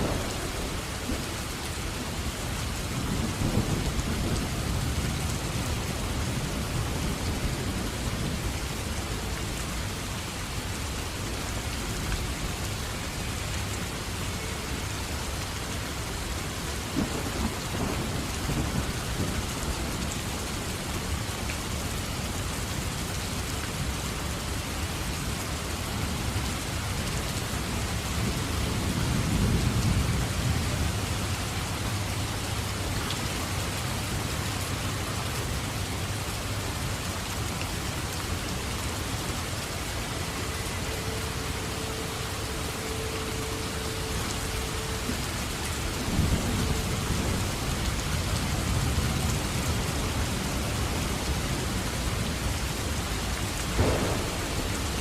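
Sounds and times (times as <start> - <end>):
low rolling thunder: 0.0 - 8.5, 16.8 - 20.2, 39.0 - 51.4, 53.7 - 55.0
steady rain falling: 0.0 - 55.0.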